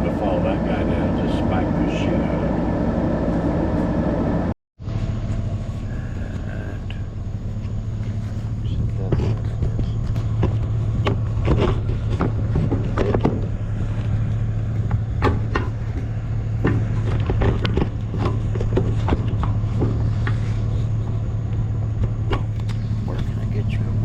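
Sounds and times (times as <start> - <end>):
engine and road drone: 0.0 - 24.0
rattles and knocks: 6.9 - 24.0.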